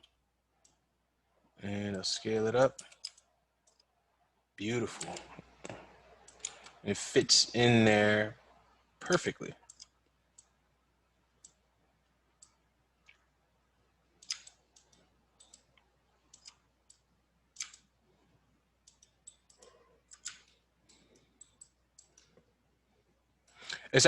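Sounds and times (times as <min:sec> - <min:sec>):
computer mouse and keyboard clicks: 0:02.7 - 0:03.9, 0:04.9 - 0:06.8, 0:09.7 - 0:10.6, 0:14.2 - 0:17.9, 0:18.8 - 0:22.5.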